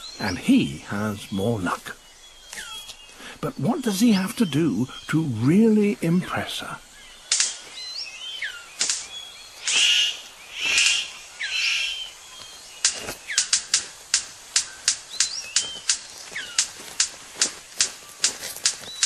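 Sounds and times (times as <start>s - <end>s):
gliding whistled bird calls: 0.0s - 19.0s
sharp bird clicks: 2.3s - 3.2s, 6.5s - 19.0s
short noisy bird bursts: 6.5s - 12.2s.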